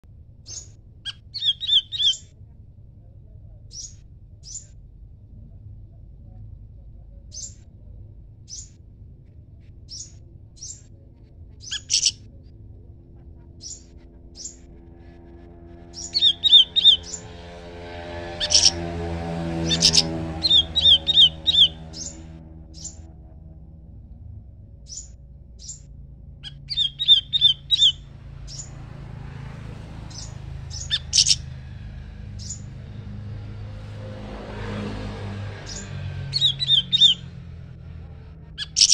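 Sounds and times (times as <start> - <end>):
faint low rumble: 0.0 - 38.8
steady low hum: 0.0 - 38.8
songbirds chirping: 0.4 - 2.4, 3.5 - 4.8, 6.9 - 8.8, 9.6 - 23.9, 24.7 - 38.9.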